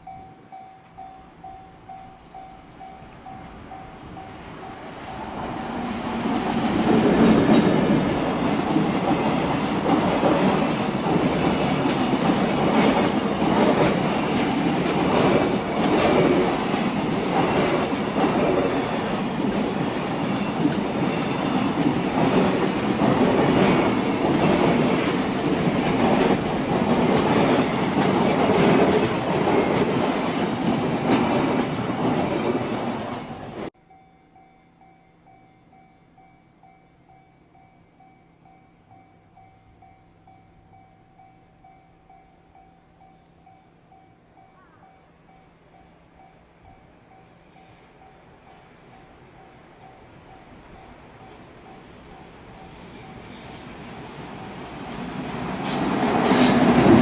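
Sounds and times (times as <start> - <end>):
train wheels rumbling on rail: 0.0 - 33.8, 49.9 - 57.0.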